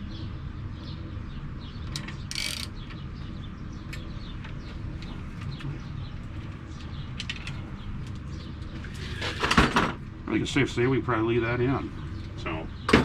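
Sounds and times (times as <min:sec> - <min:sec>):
small birds chirping: 0:00.0 - 0:09.0.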